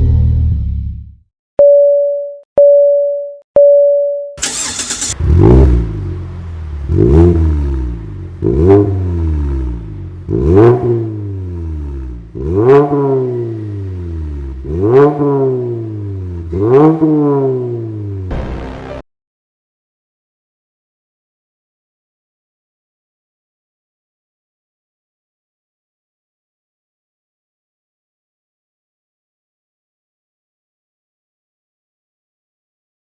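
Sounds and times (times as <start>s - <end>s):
car engine revving: 4.4s - 19.0s
burst of noise: 18.3s - 19.0s.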